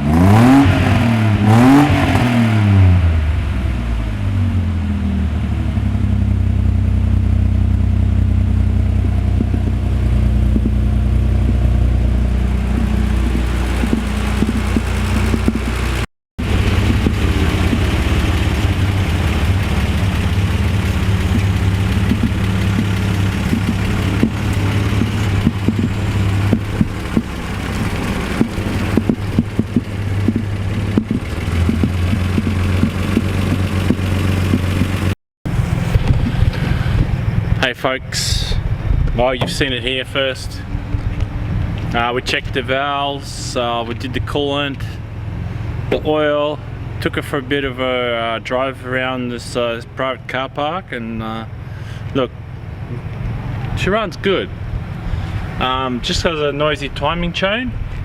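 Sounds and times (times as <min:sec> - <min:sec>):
car engine running through exhaust: 0:00.0 - 0:58.0.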